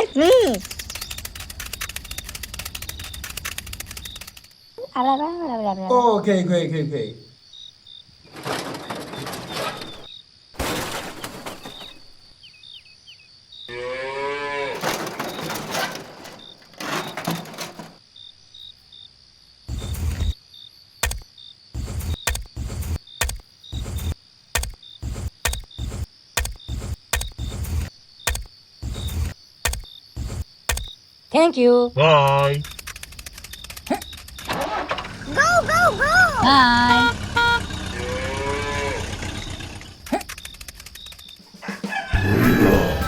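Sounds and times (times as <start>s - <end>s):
crickets chirping: 0.0s - 43.0s
cow mooing: 13.7s - 14.8s, 36.4s - 39.4s
sharp irregular knocks and thuds: 21.0s - 21.2s, 21.8s - 30.9s.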